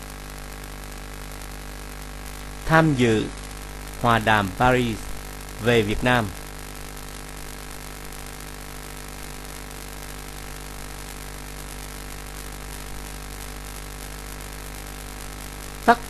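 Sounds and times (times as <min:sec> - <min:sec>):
electrical hum: 0:00.0 - 0:09.6
constant hiss: 0:00.0 - 0:16.0.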